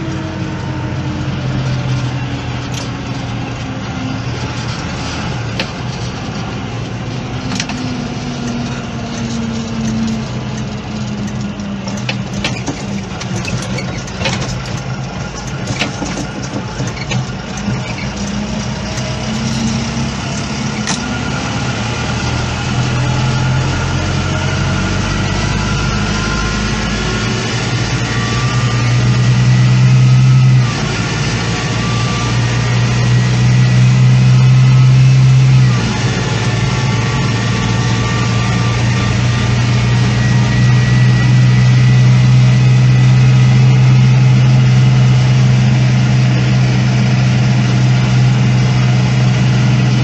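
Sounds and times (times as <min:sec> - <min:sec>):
diesel engines running: 0:00.0 - 0:50.0
sharp clicks and knocks: 0:04.4 - 0:21.2.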